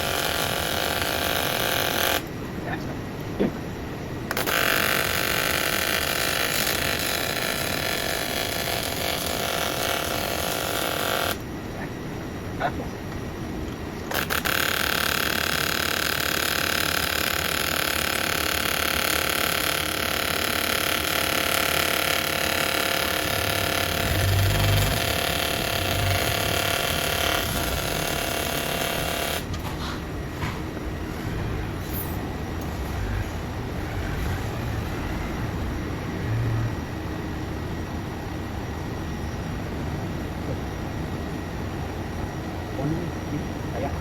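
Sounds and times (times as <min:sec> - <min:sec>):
welding arc buzzing hiss: 0:04.3 - 0:11.5, 0:14.1 - 0:29.8.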